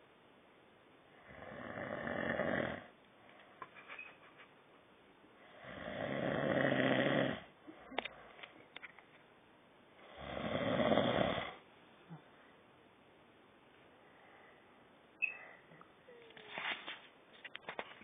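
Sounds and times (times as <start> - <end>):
person snoring: 1.2 - 2.9, 5.5 - 7.5, 10.1 - 12.2.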